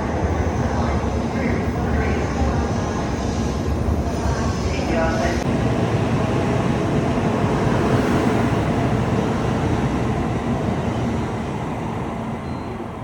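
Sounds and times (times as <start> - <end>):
train rumbling past: 0.0 - 13.0.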